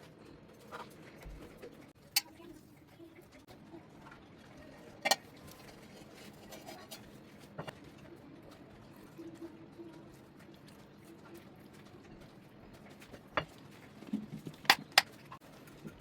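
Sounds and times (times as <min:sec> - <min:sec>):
faint handling noise: 0:04.8 - 0:16.0
kitchen utensils knocking: 0:14.4 - 0:15.1.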